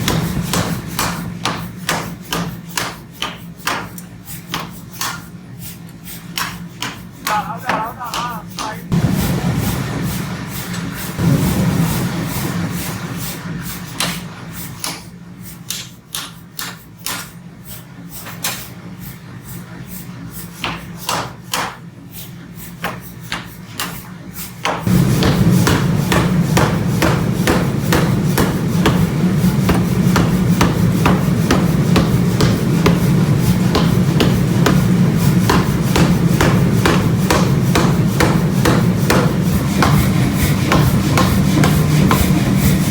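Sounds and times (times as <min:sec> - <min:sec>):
machine hum: 0:07.2 - 0:13.6, 0:24.8 - 0:42.9.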